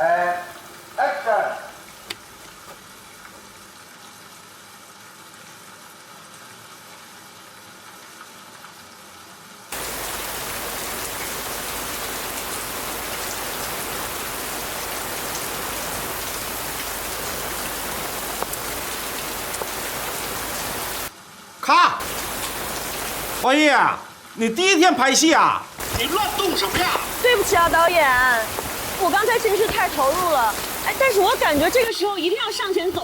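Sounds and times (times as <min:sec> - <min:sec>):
heavy rain: 0:09.7 - 0:33.0.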